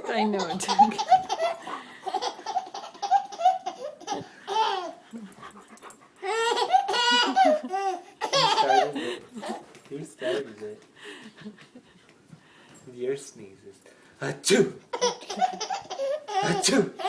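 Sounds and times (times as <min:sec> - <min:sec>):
baby laughing: 0:00.1 - 0:05.0, 0:06.2 - 0:09.7, 0:14.9 - 0:17.0.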